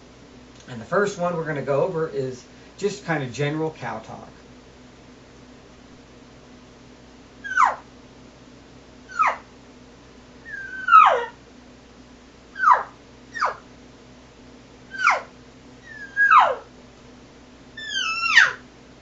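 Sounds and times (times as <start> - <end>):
elk call mews: 7.4 - 7.8, 9.1 - 9.5, 10.5 - 11.4, 12.6 - 13.6, 14.9 - 16.7, 17.8 - 18.6.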